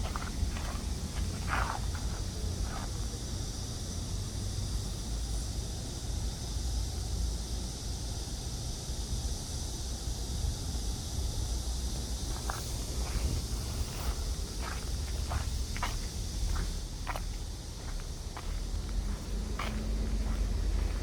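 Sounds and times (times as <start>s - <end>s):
footstep: 0.0s - 3.1s, 12.0s - 21.0s
low background rumble: 10.4s - 21.0s.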